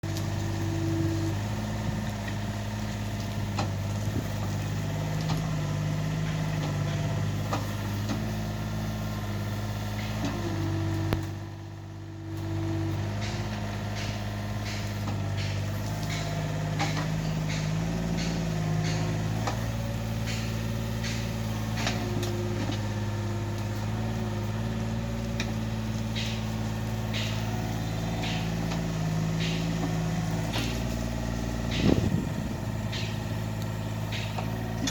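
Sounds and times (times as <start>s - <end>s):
backhoe diesel engine digging: 0.0s - 34.9s
sharp clicks and knocks: 13.2s - 22.8s.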